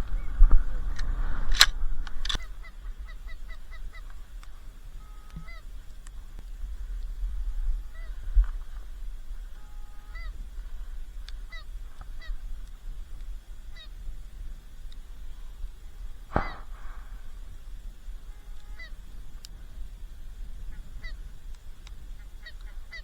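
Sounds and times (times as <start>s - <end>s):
wind rumble on microphone: 0.0s - 23.0s
geese honking: 2.3s - 23.0s
sharp bang: 16.3s - 17.0s.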